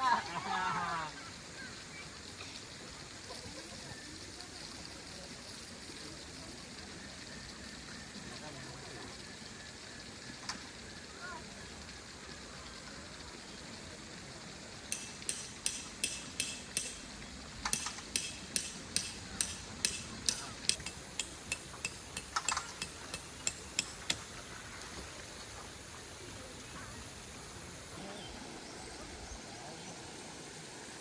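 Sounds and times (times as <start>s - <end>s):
faint steady hiss: 0.0s - 31.0s
sharp taps: 14.9s - 17.0s, 17.7s - 24.2s.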